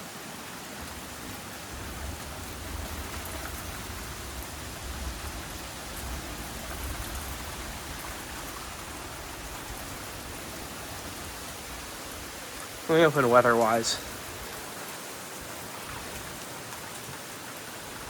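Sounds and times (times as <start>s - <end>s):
rain pouring: 0.0s - 18.0s
low thunder rumble: 0.8s - 12.3s.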